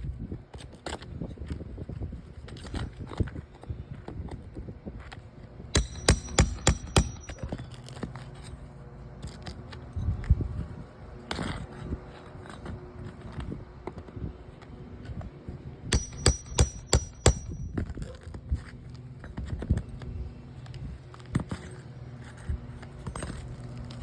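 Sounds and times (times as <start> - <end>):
sharp metal strikes: 5.8 - 7.6, 15.9 - 17.8.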